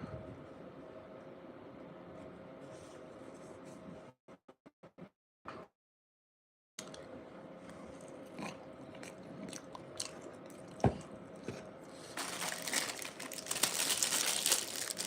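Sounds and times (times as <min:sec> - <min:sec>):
faint steady hum: 0:00.0 - 0:04.1, 0:06.8 - 0:15.0
food wrapper crinkling: 0:12.2 - 0:15.0.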